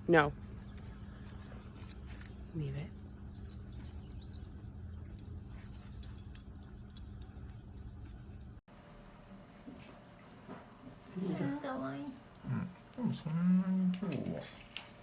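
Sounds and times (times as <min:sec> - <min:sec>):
low steady hum: 0:00.0 - 0:09.8
dog collar tags jingling: 0:00.8 - 0:08.6.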